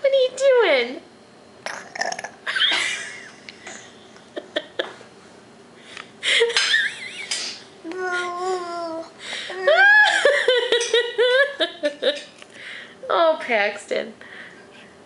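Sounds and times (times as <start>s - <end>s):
baby burping and grunting: 1.6s - 2.4s.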